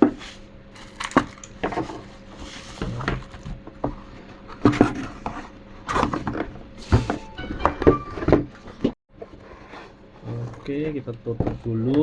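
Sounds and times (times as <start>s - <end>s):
packaging rustling: 0.8s - 1.5s.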